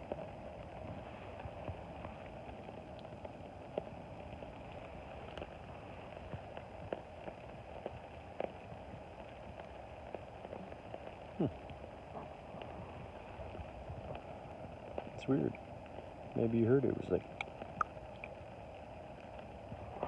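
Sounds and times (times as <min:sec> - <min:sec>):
rain falling: 0:00.0 - 0:20.0
drops ticking: 0:17.2 - 0:18.4.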